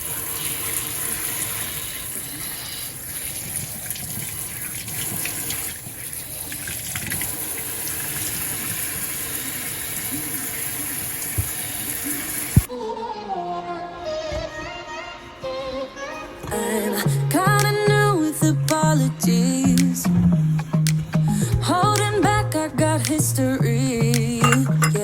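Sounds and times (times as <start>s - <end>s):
tap water running into sink: 0.0s - 12.7s, 24.4s - 25.0s.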